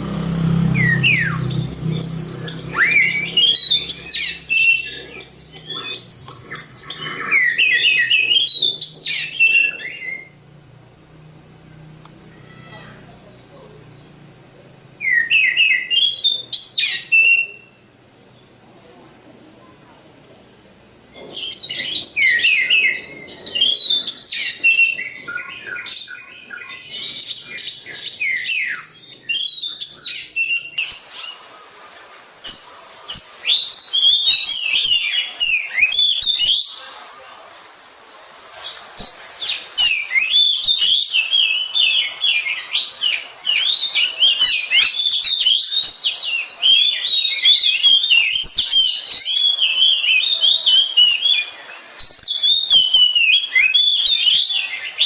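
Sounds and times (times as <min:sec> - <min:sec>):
bird singing whistled phrases: 0:00.7 - 0:10.4, 0:15.0 - 0:17.9, 0:21.3 - 0:31.4, 0:32.4 - 0:36.9, 0:38.6 - 0:55.0.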